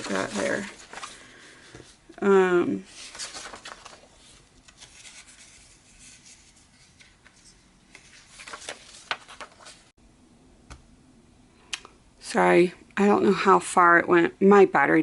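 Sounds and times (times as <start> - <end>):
paper pages rustling and tapping: 0.0 - 2.0, 2.9 - 9.9.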